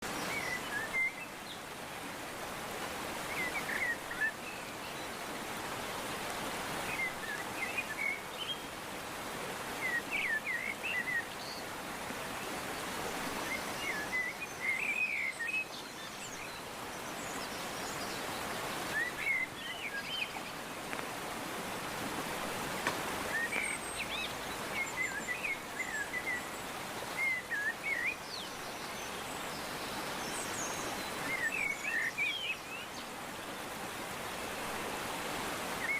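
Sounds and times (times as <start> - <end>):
birds chirping: 0.0 - 2.0, 3.1 - 8.8, 9.7 - 35.9
outdoor hiss: 16.6 - 35.9.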